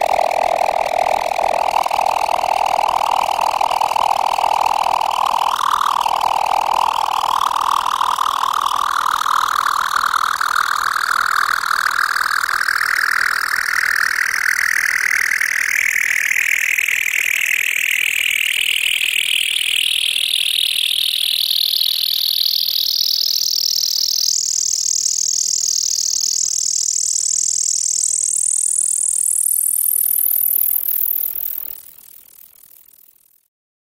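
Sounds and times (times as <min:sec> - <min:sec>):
rising electronic sci-fi sweep: 0:00.0 - 0:12.0.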